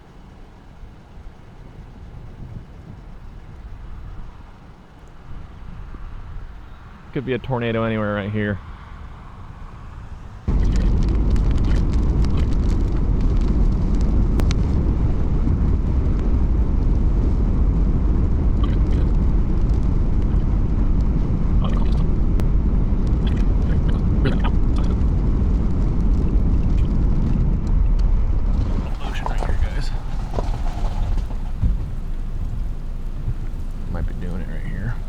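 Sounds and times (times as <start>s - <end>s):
wind and road noise: 0.0s - 35.0s
car driving rumble: 28.7s - 35.0s.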